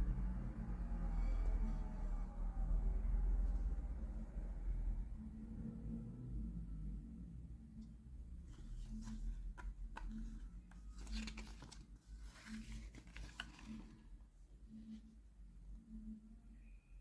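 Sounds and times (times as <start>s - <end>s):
faint low hum: 0.0s - 17.0s
packaging crinkling: 10.9s - 14.0s.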